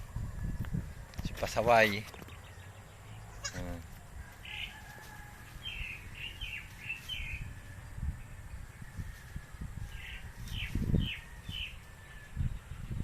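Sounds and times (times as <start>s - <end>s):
baby goat bleat: 3.3s - 3.8s.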